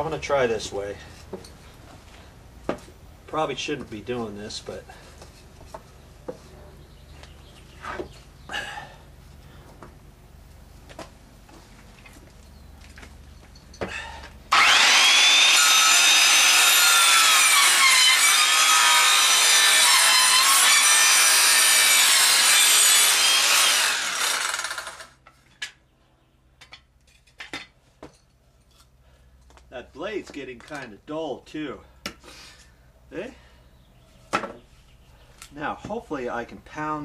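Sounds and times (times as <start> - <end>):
circular saw cutting wood: 14.5 - 25.2.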